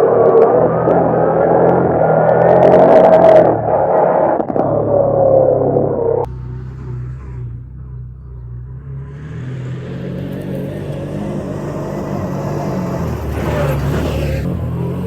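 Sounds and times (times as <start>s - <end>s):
side-by-side engine running: 6.2s - 15.0s.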